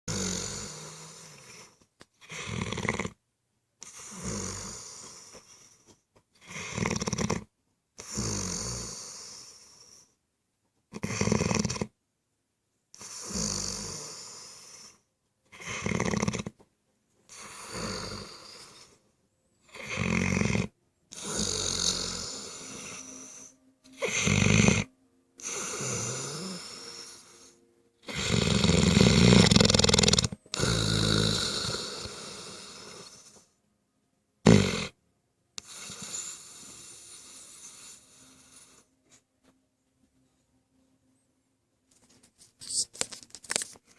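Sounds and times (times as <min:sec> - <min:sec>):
dog snoring: 0:00.1 - 0:03.2, 0:03.8 - 0:10.2, 0:10.9 - 0:12.0, 0:12.9 - 0:16.6, 0:17.3 - 0:19.0, 0:19.6 - 0:33.6, 0:34.4 - 0:35.0, 0:35.6 - 0:39.2.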